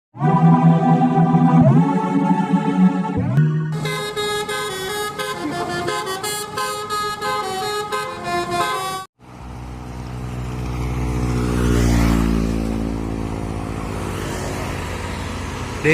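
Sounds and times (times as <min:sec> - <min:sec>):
multi-tone bus horn tune: 0:00.2 - 0:09.1.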